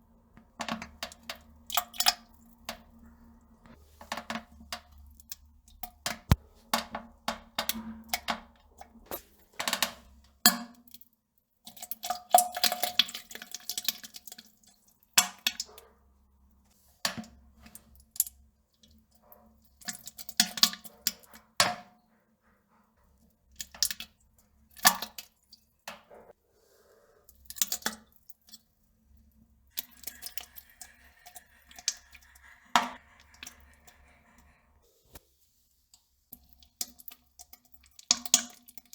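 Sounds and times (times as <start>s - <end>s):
crackling and plopping in toilet: 0.4s - 15.8s, 23.6s - 26.2s, 27.3s - 34.7s, 36.3s - 38.9s.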